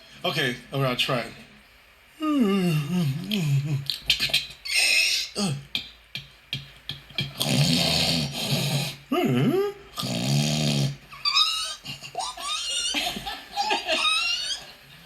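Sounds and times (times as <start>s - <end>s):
mouth hissing: 2.5s - 5.6s, 7.3s - 12.0s.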